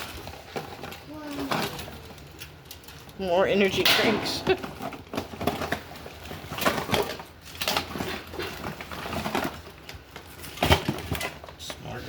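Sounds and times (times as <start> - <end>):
rummaging through backpack: 4.4 - 11.9.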